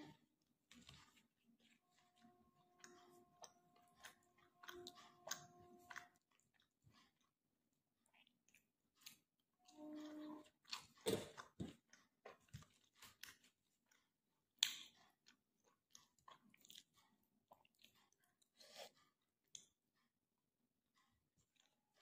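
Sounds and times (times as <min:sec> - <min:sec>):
close chewing and mouth sounds: 0:00.0 - 0:22.0.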